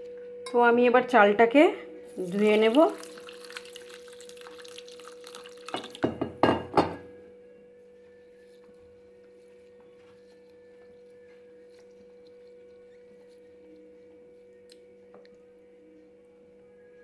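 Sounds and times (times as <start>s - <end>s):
low electrical hum: 0.0s - 17.0s
rice grains stirred in water: 2.1s - 6.0s.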